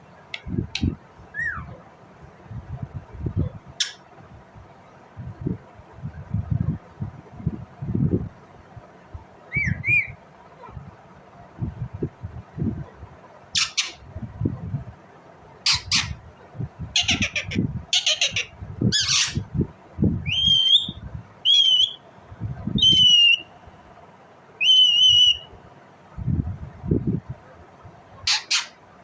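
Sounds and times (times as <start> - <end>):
parakeet squawking: 0.7 - 1.8, 3.8 - 4.0, 9.5 - 10.2, 13.6 - 14.0, 15.6 - 16.2, 17.0 - 19.5, 28.2 - 28.8
parakeet whistled calls: 0.8 - 1.8, 3.8 - 4.0, 9.5 - 10.2, 13.6 - 14.0, 15.7 - 16.2, 17.0 - 19.4, 20.2 - 22.0, 22.8 - 23.5, 24.6 - 25.5, 28.3 - 28.8.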